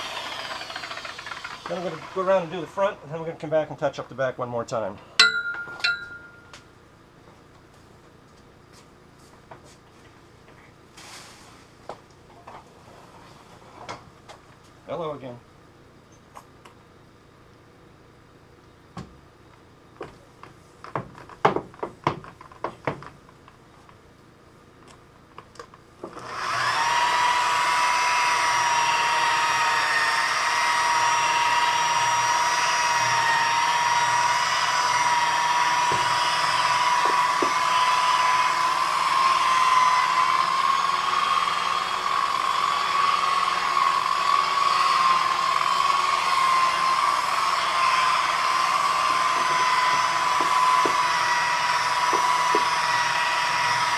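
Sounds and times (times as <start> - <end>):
electric polisher whining: 0.0 - 2.7, 26.1 - 53.9.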